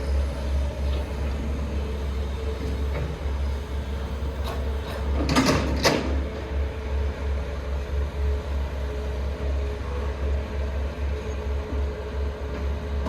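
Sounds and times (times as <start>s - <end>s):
diesel engine rumbling: 0.0s - 5.5s.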